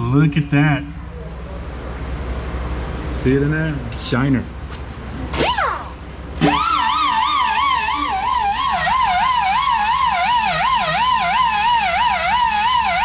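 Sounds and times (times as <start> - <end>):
high warbling lead tone: 5.4 - 13.0.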